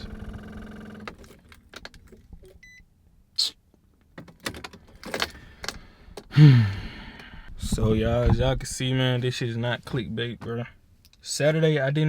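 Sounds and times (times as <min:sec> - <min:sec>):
electrical hum: 0:00.0 - 0:01.6.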